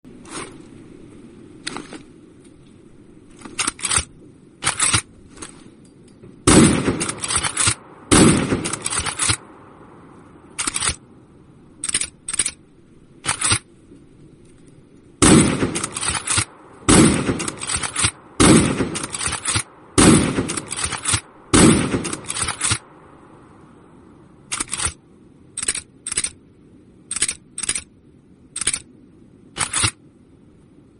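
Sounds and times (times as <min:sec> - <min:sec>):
rifle shots: 0:06.4 - 0:09.6, 0:15.2 - 0:22.9.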